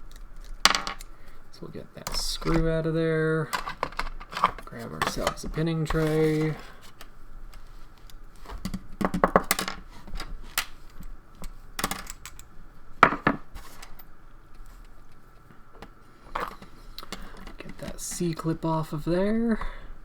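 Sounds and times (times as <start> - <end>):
padlock and tools clinking: 11.8 - 12.5.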